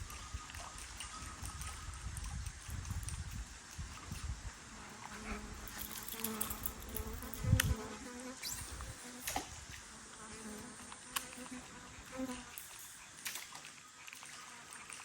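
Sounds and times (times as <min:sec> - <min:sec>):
flying insect buzzing: 0:04.6 - 0:13.5.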